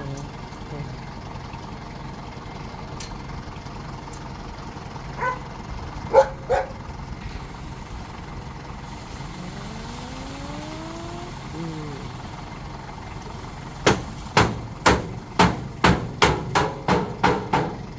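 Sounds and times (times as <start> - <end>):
vehicle engine running and revving: 0.0 - 17.9
dog barking: 5.2 - 5.5, 6.1 - 6.8.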